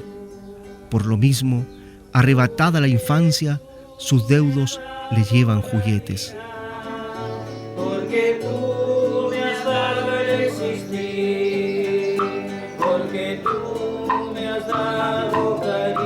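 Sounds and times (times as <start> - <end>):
background music with held notes: 0.0 - 16.0
plucked guitar: 6.8 - 16.0.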